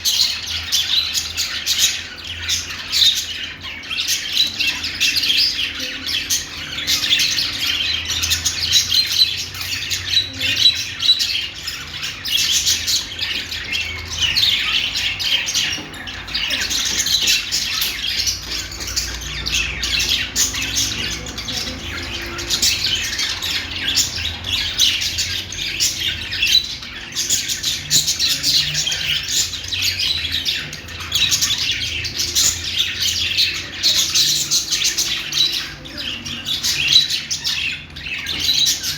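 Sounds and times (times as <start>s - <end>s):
budgerigars warbling and chattering: 0.0s - 38.9s.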